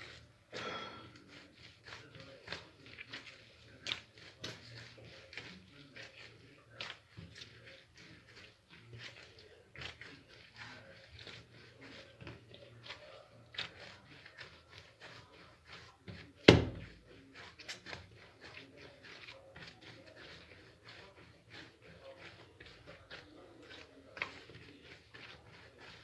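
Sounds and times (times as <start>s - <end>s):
dough being kneaded by hand: 0.0s - 26.0s.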